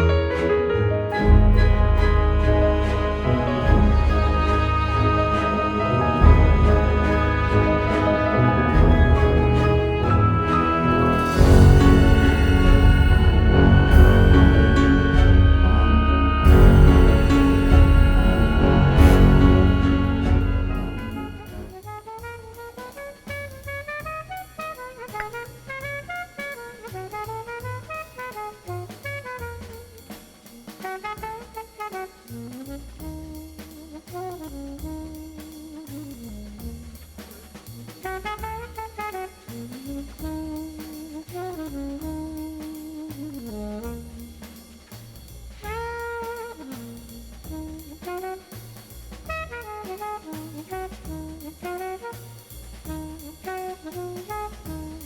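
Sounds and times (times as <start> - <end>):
saxophone melody: 0.0 - 28.6
bass: 0.0 - 55.0
drum kit groove: 1.2 - 4.6, 6.2 - 55.0.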